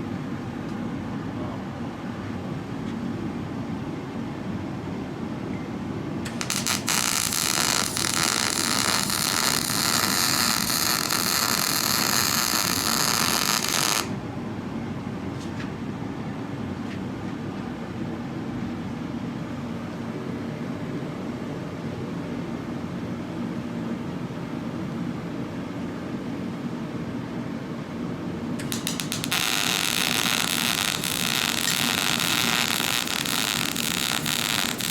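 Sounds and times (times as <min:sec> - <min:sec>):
welding arc crackling: 0:06.3 - 0:14.1, 0:28.6 - 0:34.9.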